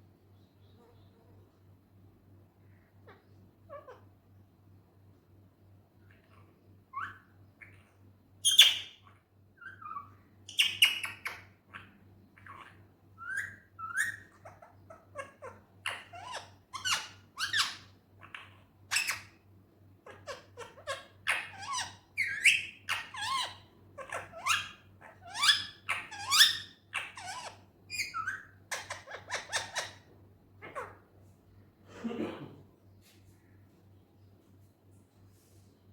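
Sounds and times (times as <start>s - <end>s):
parakeet chirping and squawking: 3.0s - 4.0s, 6.1s - 19.4s, 20.0s - 31.1s.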